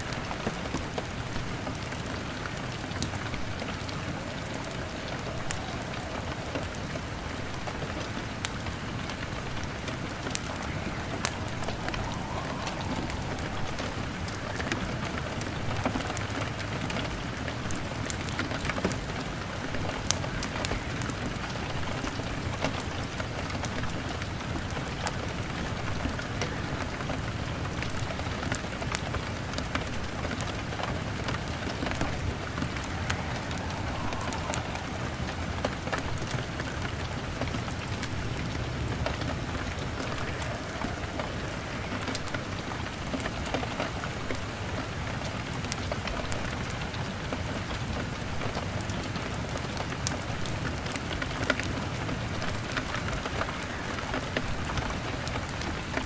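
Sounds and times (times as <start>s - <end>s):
crackling log fire: 0.0s - 56.0s
rain on a window: 0.0s - 56.0s.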